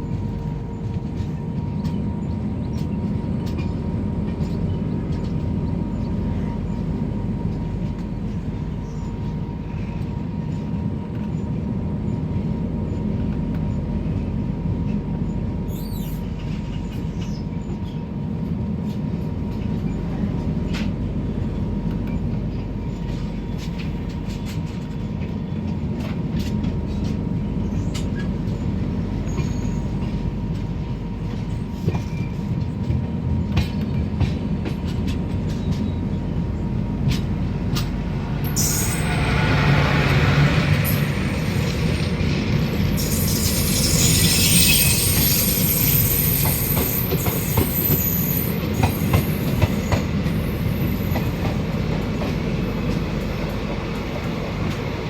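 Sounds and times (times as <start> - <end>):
train rumbling: 0.0 - 55.0
hissing squeal: 38.4 - 51.2.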